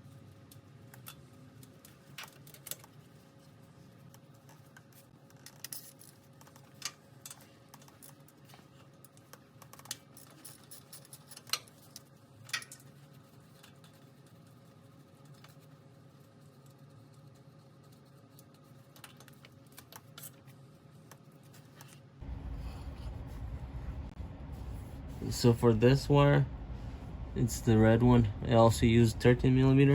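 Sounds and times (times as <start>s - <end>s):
faint steady hum: 0.0s - 29.9s
louder low hum: 22.2s - 29.9s.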